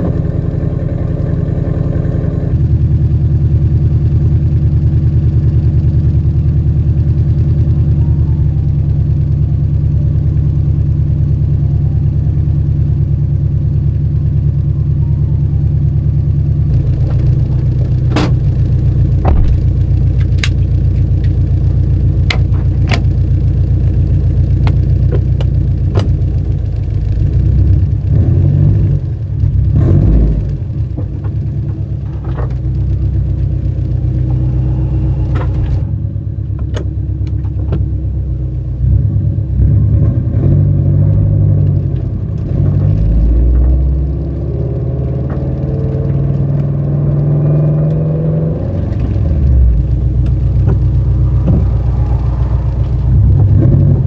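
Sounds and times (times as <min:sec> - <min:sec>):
boxer engine rumble revving: 0:00.0 - 0:46.4, 0:47.6 - 0:54.0
sharp clicks: 0:19.2 - 0:21.4.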